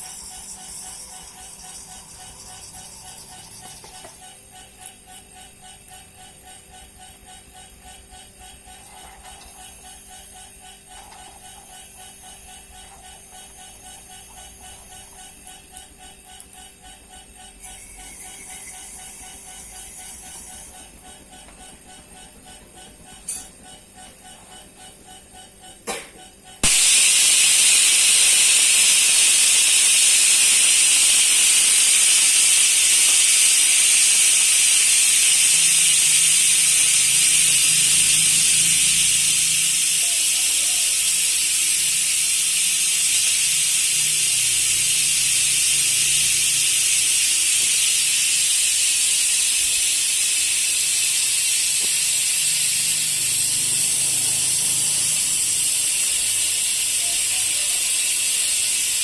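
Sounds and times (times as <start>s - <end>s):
rushing air hiss: 26.6s - 57.0s.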